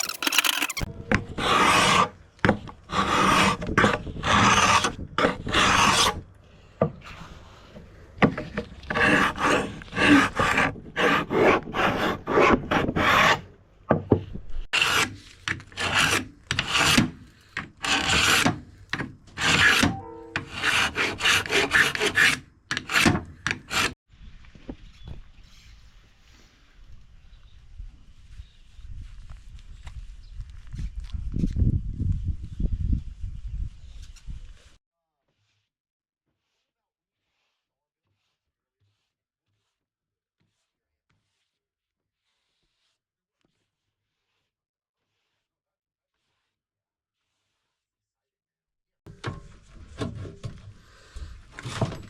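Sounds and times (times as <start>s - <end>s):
sanding strokes on wood: 37.2s - 39.8s, 42.2s - 45.4s.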